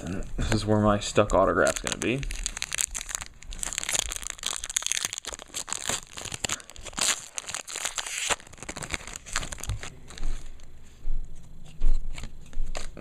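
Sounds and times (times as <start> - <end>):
wrapper crinkling and tearing: 1.4 - 10.3.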